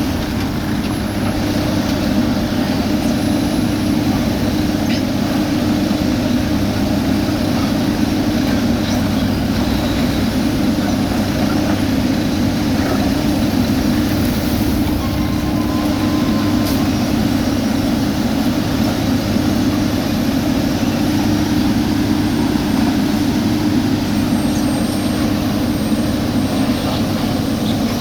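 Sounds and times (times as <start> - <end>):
diesel machinery engine drone: 0.0 - 28.0.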